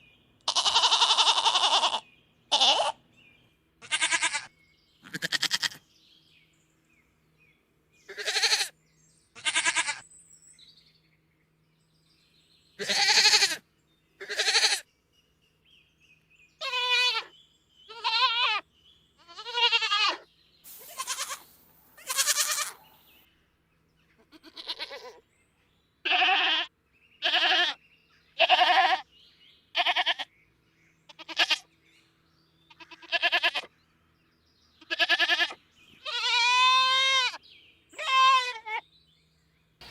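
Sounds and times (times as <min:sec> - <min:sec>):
goats bleating: 0:00.5 - 0:03.0, 0:03.8 - 0:05.8, 0:08.1 - 0:08.7, 0:09.4 - 0:10.0, 0:12.8 - 0:13.6, 0:14.2 - 0:14.8, 0:16.6 - 0:17.3, 0:17.9 - 0:18.6, 0:19.2 - 0:23.1, 0:24.2 - 0:25.2, 0:26.0 - 0:27.8, 0:28.4 - 0:29.0, 0:29.7 - 0:30.3, 0:31.1 - 0:31.7, 0:32.7 - 0:33.7, 0:34.8 - 0:37.4, 0:38.0 - 0:38.8.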